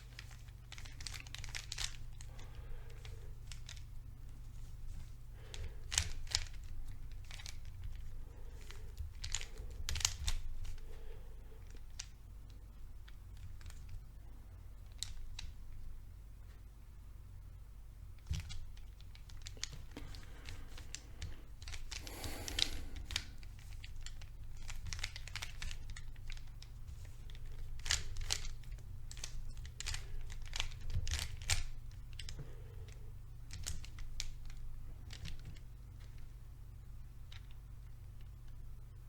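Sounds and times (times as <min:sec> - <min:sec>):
puzzle cube clicking: 0:00.1 - 0:03.9, 0:05.4 - 0:10.9, 0:18.2 - 0:32.4.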